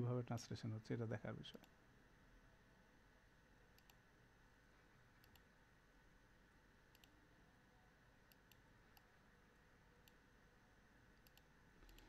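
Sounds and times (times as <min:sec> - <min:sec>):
low steady hiss: 0:00.0 - 0:12.0
computer mouse clicks: 0:03.7 - 0:04.0, 0:05.2 - 0:05.5, 0:06.9 - 0:07.2, 0:08.3 - 0:09.1, 0:11.2 - 0:12.0.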